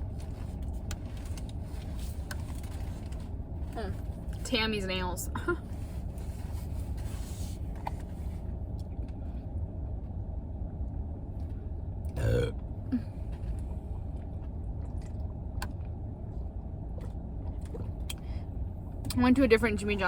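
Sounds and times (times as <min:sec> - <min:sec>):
car rumble: 0:00.0 - 0:20.0
person burping: 0:12.1 - 0:13.1.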